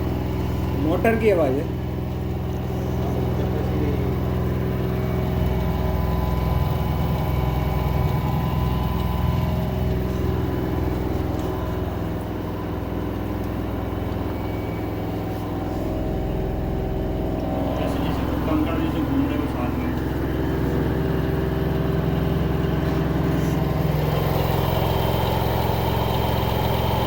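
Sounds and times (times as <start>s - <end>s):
washing machine motor hum: 0.0s - 27.0s
gritty rattle in drum: 15.2s - 24.8s.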